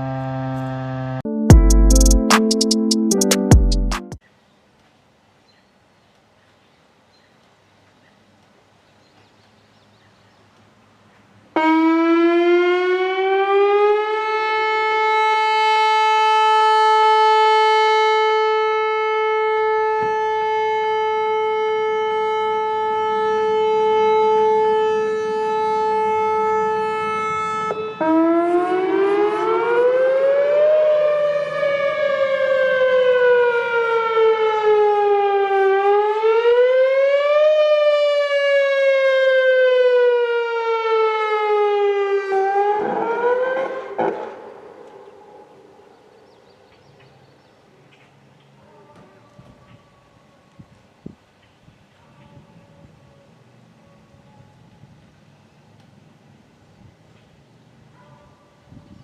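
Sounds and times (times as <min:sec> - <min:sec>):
tornado warning siren wailing: 0:00.0 - 0:01.4, 0:11.6 - 0:46.9.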